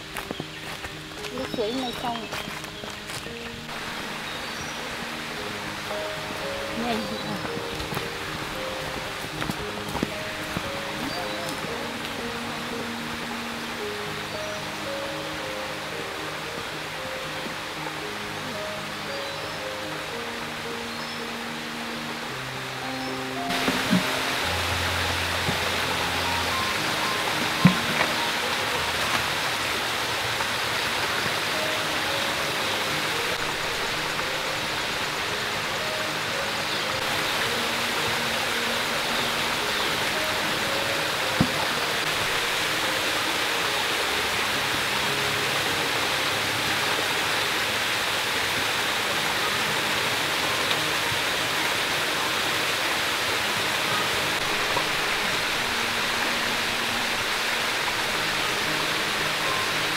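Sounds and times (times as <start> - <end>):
stream water flowing: 0.0 - 59.9.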